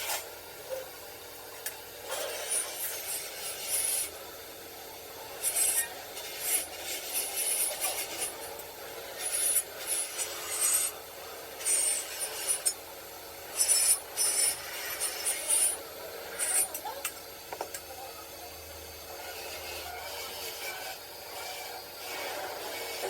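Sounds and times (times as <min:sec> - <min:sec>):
hand tool rasping: 0:02.2 - 0:04.1, 0:05.4 - 0:08.6, 0:09.2 - 0:11.0, 0:11.6 - 0:12.8, 0:13.5 - 0:16.8.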